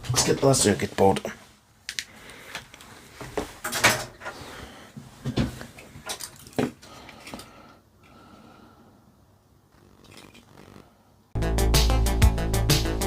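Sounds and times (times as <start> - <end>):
plastic parts clattering: 3.6 - 4.3, 5.8 - 7.5.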